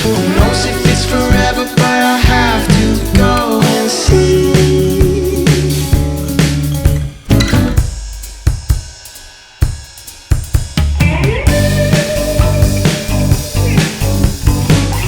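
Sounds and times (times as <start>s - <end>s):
band with bass and guitar: 0.0s - 8.1s, 10.9s - 15.0s
sparse drum hits: 6.8s - 9.0s.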